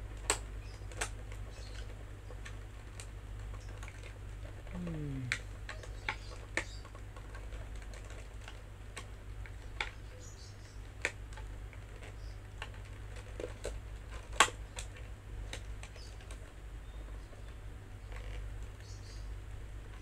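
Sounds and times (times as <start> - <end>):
plastic packaging clicking and tapping: 0.0 - 4.6, 5.3 - 16.6
steady low hum: 0.0 - 20.0.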